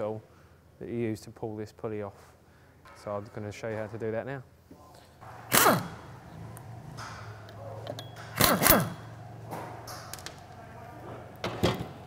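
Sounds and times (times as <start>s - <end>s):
pneumatic impact wrench bursts: 5.3s - 6.1s, 8.2s - 9.2s.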